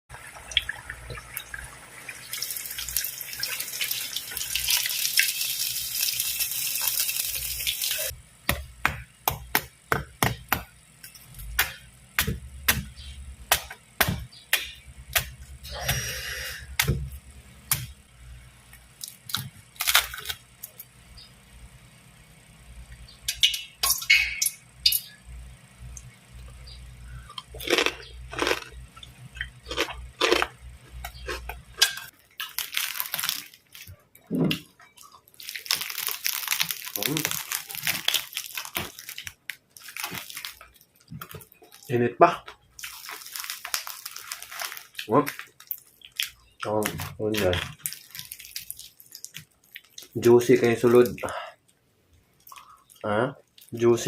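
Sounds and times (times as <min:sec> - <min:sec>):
crispy skin cracking and crunching: 0:19.0 - 0:20.8, 0:27.4 - 0:51.3.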